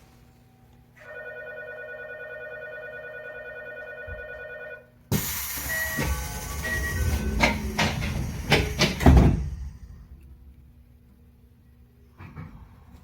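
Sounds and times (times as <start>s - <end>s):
door-closing warning tone: 5.2s - 9.4s
sliding doors slamming shut: 5.2s - 10.2s.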